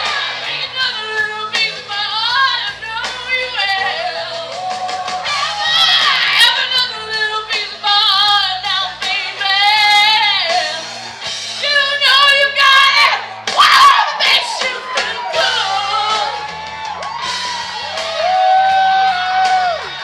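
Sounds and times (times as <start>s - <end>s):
steady bass line: 0.0s - 20.0s
person singing with vibrato: 13.8s - 16.4s.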